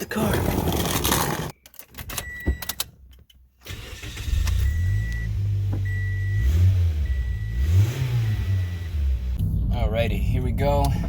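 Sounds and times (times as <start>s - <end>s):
car engine starting and idling: 3.6s - 11.0s
short warning beeps: 4.6s - 9.0s.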